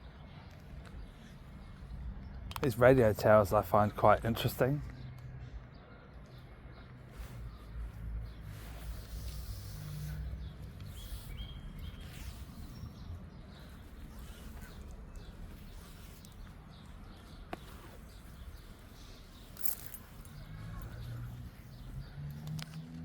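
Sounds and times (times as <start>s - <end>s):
outdoor background rumble: 0.0s - 23.0s
high bird chirps: 8.6s - 22.3s.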